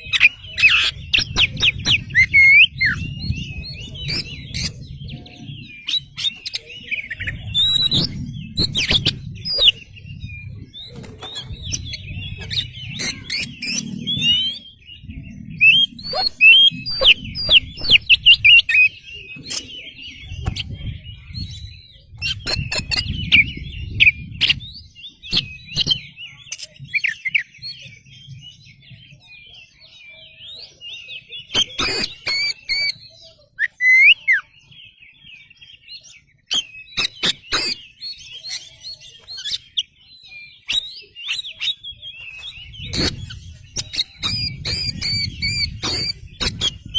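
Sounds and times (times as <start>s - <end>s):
bird singing whistled notes: 0.0s - 46.9s
low fluttering: 6.7s - 18.6s.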